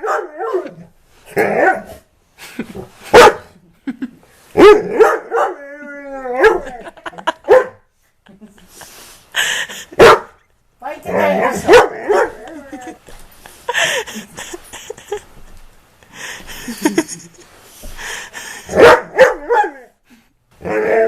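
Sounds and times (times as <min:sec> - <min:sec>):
dog barking: 0:00.0 - 0:00.7, 0:03.1 - 0:03.5, 0:04.6 - 0:05.6, 0:07.4 - 0:07.8, 0:10.0 - 0:10.4, 0:11.4 - 0:12.4, 0:18.7 - 0:19.8.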